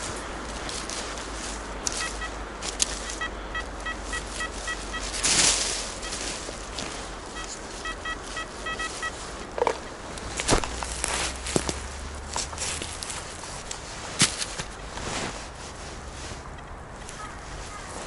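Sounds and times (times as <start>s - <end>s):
loud rustling noise: 0.0s - 16.5s, 17.1s - 18.0s
metal detector rapid beeps: 1.9s - 5.2s, 6.0s - 6.4s, 7.3s - 9.2s.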